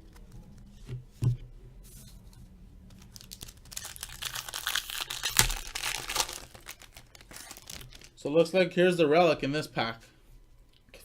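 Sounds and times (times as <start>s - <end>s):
plastic wrapper tearing and crinkling: 2.9s - 8.2s.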